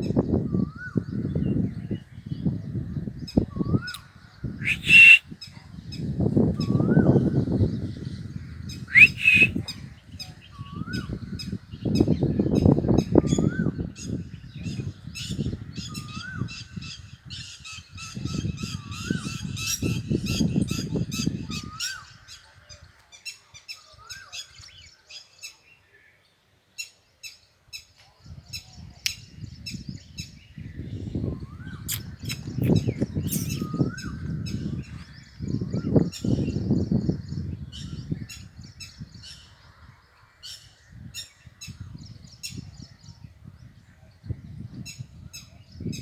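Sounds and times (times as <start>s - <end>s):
high chirps and squawks: 4.6s - 5.2s, 8.9s - 9.6s, 31.9s - 33.7s
parrot rising call: 4.6s - 5.2s, 8.9s - 9.5s.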